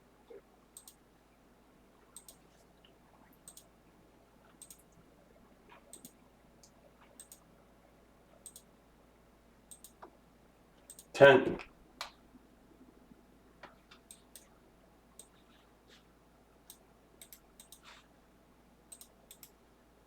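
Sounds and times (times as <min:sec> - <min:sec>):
computer mouse clicks: 0:00.8 - 0:01.0, 0:02.1 - 0:02.5, 0:03.4 - 0:03.7, 0:04.5 - 0:05.0, 0:05.7 - 0:07.5, 0:08.4 - 0:08.7, 0:09.7 - 0:10.2, 0:10.8 - 0:11.1, 0:13.6 - 0:14.5, 0:15.2 - 0:15.6, 0:16.7 - 0:18.0, 0:18.9 - 0:19.6.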